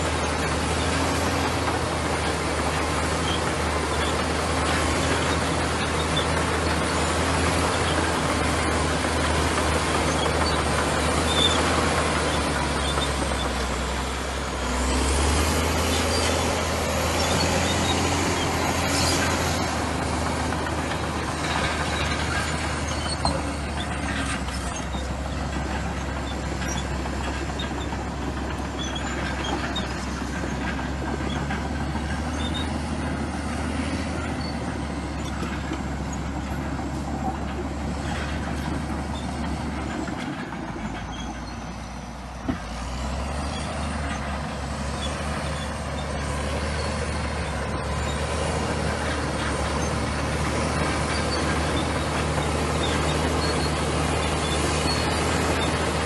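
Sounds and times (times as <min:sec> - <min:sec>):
bulldozer diesel engine working: 0:00.0 - 0:56.0.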